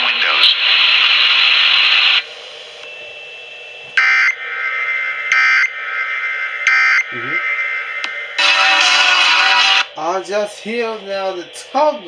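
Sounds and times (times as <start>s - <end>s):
data burst tones: 2.9s - 12.0s.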